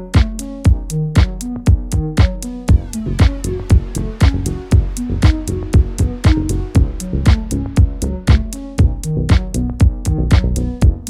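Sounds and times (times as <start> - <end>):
drum machine beat: 0.0 - 11.0
sustained synth notes: 1.5 - 11.0.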